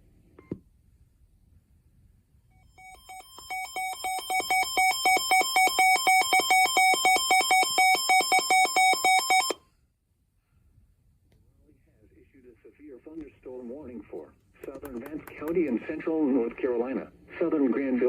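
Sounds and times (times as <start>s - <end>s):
rapid electronic alert beeping: 2.8s - 9.6s.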